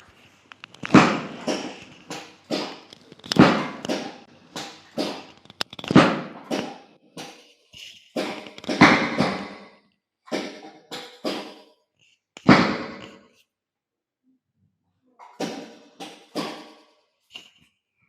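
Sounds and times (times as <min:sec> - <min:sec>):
sharp slaps or thumps: 0:00.9 - 0:07.4.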